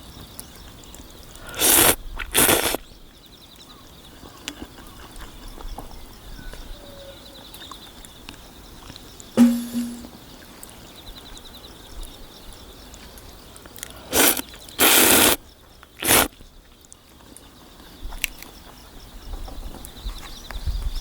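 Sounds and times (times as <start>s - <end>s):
slurping noodles: 1.4s - 2.8s, 13.8s - 15.4s, 16.0s - 16.3s.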